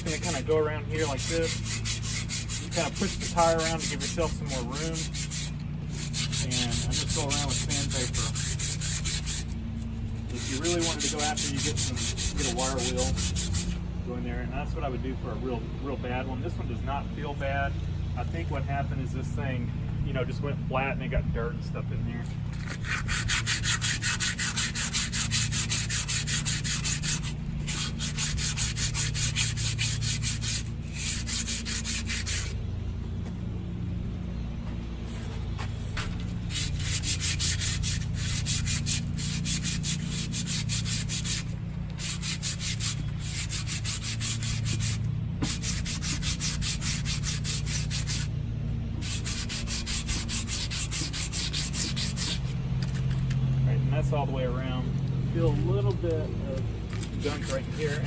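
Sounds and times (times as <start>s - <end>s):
sandpaper rubbing on metal: 0.0s - 13.8s, 22.5s - 32.6s, 35.0s - 48.3s, 49.0s - 53.2s, 56.9s - 58.0s.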